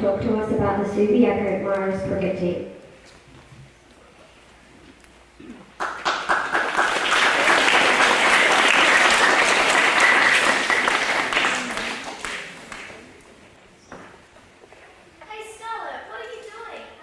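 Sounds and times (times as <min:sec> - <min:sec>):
audience applauding: 0:05.8 - 0:13.2.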